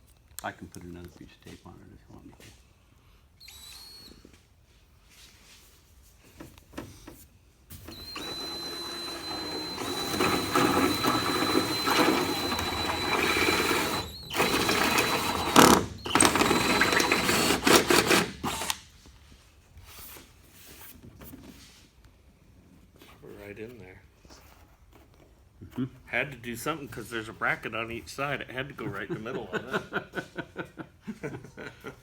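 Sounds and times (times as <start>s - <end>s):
electric drill whining: 3.4s - 4.3s, 7.7s - 18.8s.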